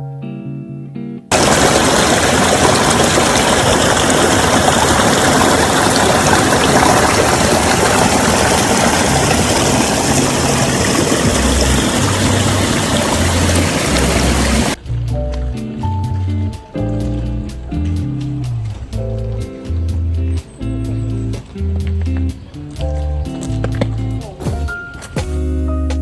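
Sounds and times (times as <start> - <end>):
rushing water roar: 1.3 - 14.8.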